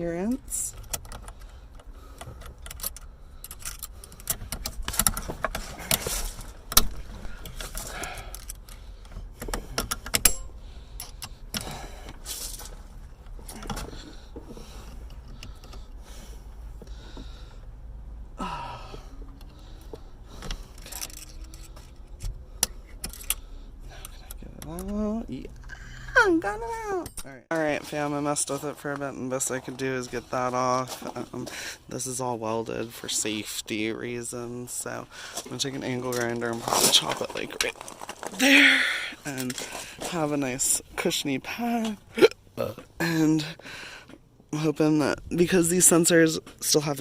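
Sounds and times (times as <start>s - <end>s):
heavy breathing: 7.0s - 12.7s, 13.4s - 24.4s, 31.3s - 31.9s, 35.0s - 35.5s, 38.4s - 40.2s, 43.5s - 44.2s
metal tools clinking and rattling: 9.4s - 14.2s, 20.7s - 25.0s.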